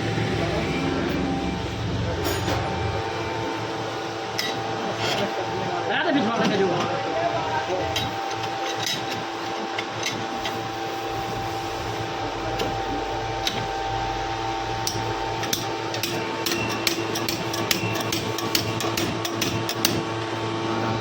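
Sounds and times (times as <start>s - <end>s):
steady hum: 0.0s - 21.0s
metal tools clicking and tapping: 7.9s - 9.2s, 14.9s - 20.0s.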